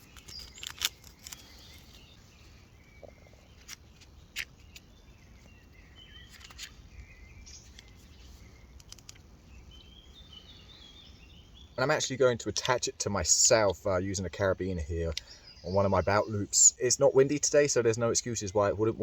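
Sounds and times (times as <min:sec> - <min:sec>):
faint bird chirps: 0:00.0 - 0:12.0, 0:15.1 - 0:16.9
plastic device clicks and handling: 0:08.8 - 0:09.2.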